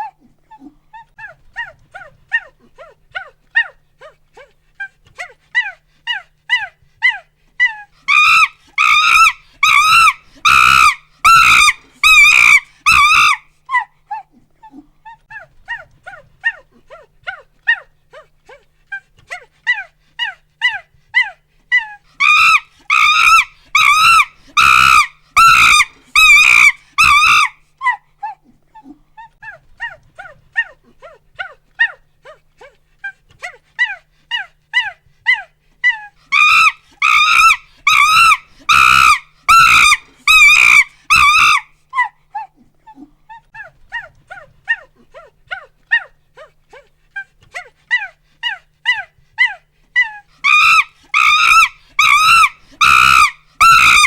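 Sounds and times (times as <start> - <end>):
monkey hooting: 5.6 - 13.9, 19.7 - 28.4, 33.4 - 46.2, 47.6 - 54.0
monkey screaming: 5.6 - 13.9, 19.7 - 28.0, 33.8 - 42.5, 47.6 - 54.0.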